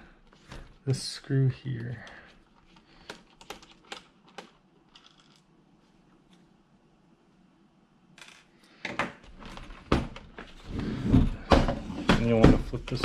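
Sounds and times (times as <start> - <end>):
laptop handling and rustling: 0.0 - 1.0, 2.2 - 6.5, 9.1 - 12.2.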